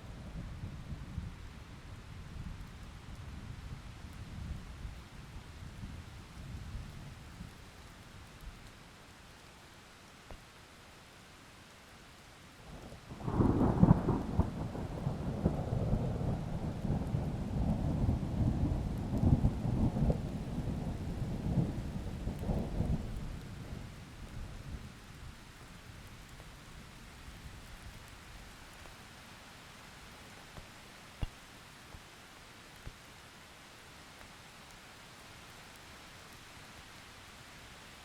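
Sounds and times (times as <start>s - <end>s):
rain hiss: 0.0s - 38.0s
thunder rumbling with cracks: 13.1s - 24.4s.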